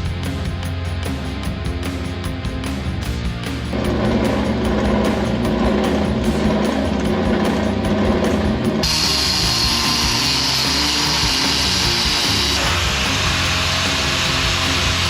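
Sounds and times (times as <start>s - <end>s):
background music with steady beat: 0.0s - 15.0s
power tool running: 3.7s - 15.0s.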